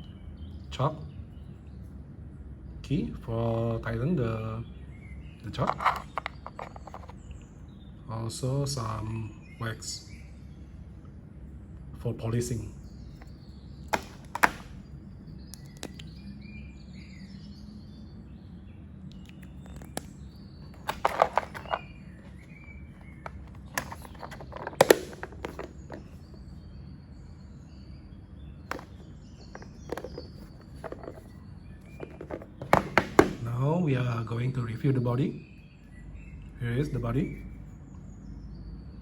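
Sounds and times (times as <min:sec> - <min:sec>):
small items clicking and knocking: 0:05.6 - 0:07.3, 0:13.9 - 0:14.7, 0:20.7 - 0:22.4, 0:23.0 - 0:26.2, 0:28.7 - 0:31.3, 0:31.9 - 0:33.4
faint bird chirps: 0:25.7 - 0:39.0.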